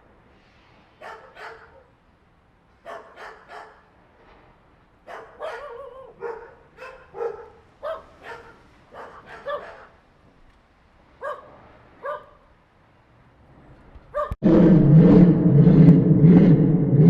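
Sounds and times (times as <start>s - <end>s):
dog barking: 1.0s - 2.0s, 2.8s - 3.9s, 5.0s - 10.0s, 11.2s - 12.5s, 14.1s - 14.4s
processed deep barks: 14.2s - 17.0s
low pulsing drone: 14.4s - 17.0s.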